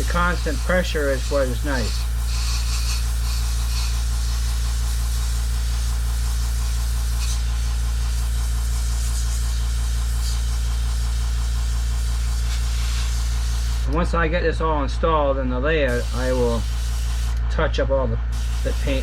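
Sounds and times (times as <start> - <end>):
faint air hisses: 0.0 - 3.9, 15.9 - 17.4, 18.4 - 19.0
air compressor humming: 0.0 - 19.0.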